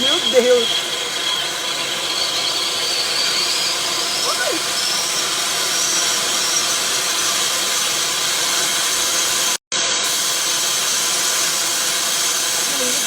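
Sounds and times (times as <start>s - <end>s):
fire hissing: 0.0s - 13.0s.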